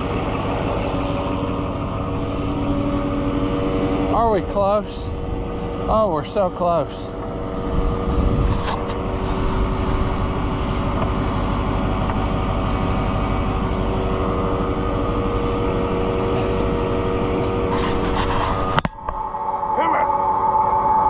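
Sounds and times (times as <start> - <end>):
tractor engine running: 0.0 - 21.0.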